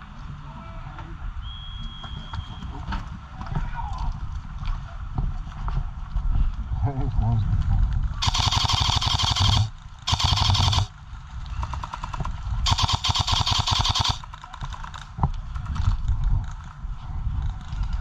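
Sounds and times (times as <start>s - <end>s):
airsoft gun firing full auto: 8.2s - 10.9s, 11.6s - 15.0s.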